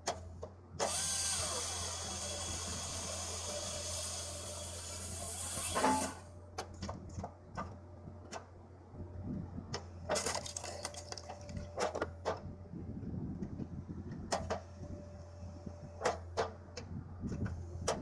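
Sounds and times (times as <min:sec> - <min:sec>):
low engine hum: 0:06.2 - 0:18.0.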